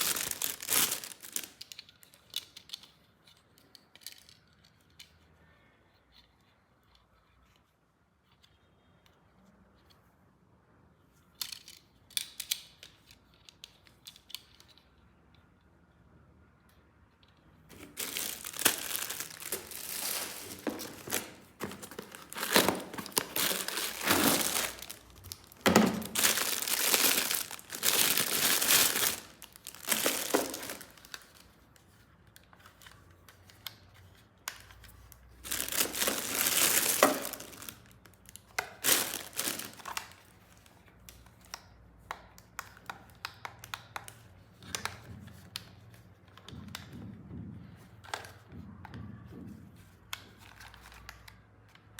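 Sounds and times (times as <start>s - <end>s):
plastic packaging crinkling and tearing: 0.0s - 2.6s, 17.7s - 31.8s, 35.0s - 40.8s
plastic parts clicking: 0.0s - 5.2s, 11.3s - 15.6s, 17.1s - 31.6s.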